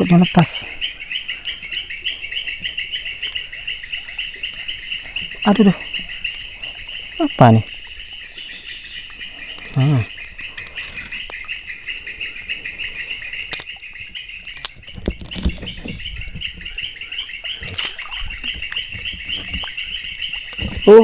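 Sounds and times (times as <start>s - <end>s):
frogs and insects chorus: 0.0s - 21.0s
fish thrashing in a net: 17.5s - 19.7s.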